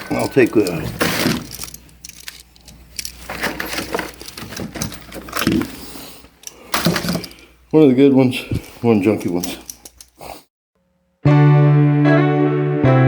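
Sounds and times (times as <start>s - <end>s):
electrical parts clattering in box: 0.0s - 5.8s, 6.7s - 7.5s.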